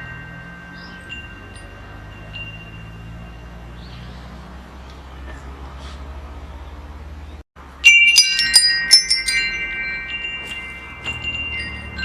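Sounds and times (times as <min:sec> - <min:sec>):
metal wind chimes ringing: 0:00.0 - 0:04.6, 0:07.6 - 0:12.0.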